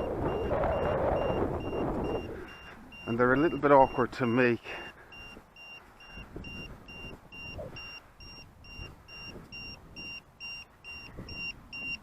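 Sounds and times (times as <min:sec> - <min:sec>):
low rumbling and bumps: 0:00.0 - 0:03.6
electronic beeper beeping: 0:00.0 - 0:04.6, 0:05.2 - 0:12.0.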